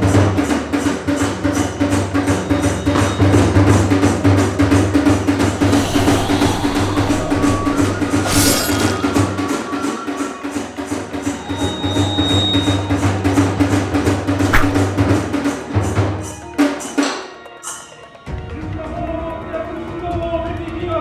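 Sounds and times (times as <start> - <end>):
drums beating fast rhythm: 0.0 - 17.2
held tone: 5.6 - 10.3.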